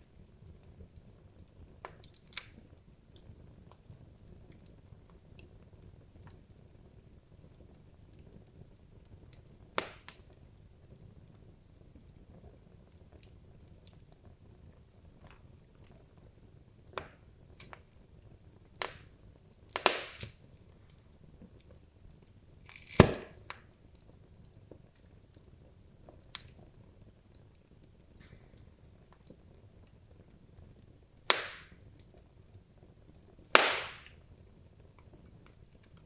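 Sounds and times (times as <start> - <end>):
logs crackling and popping: 0.0 - 36.0
low hiss of flames: 15.2 - 30.3.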